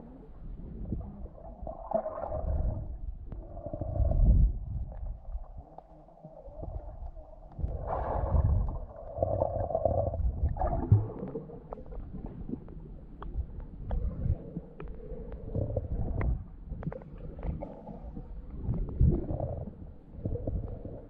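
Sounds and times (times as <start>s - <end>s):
underwater bubbling and churning: 0.0s - 21.0s.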